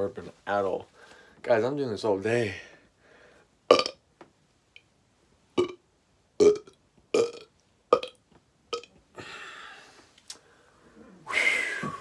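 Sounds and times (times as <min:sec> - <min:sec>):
person burping: 0:03.7 - 0:04.0, 0:05.6 - 0:05.8, 0:06.4 - 0:09.3.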